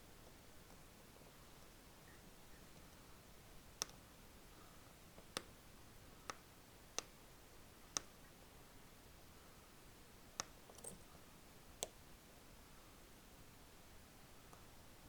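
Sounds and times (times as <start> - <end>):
small screws and tools clicking: 10.4 - 11.1.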